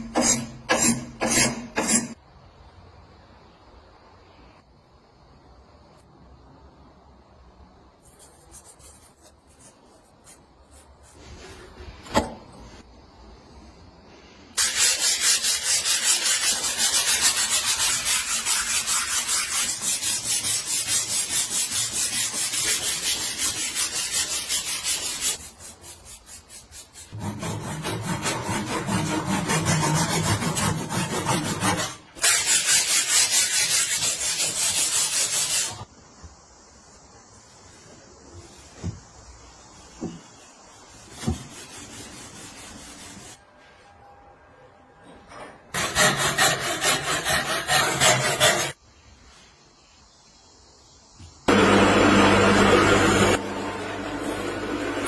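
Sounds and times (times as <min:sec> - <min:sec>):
back-and-forth scraping strokes: 0:14.6 - 0:35.9, 0:45.8 - 0:48.8.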